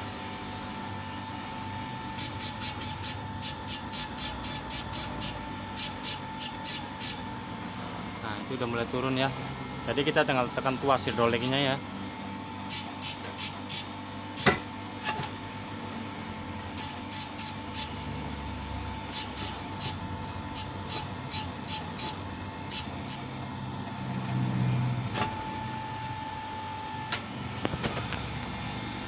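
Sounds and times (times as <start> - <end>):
steady hum: 0.0 - 29.0
hydraulic press lever clicks: 14.4 - 15.4, 25.1 - 25.4, 27.1 - 28.1.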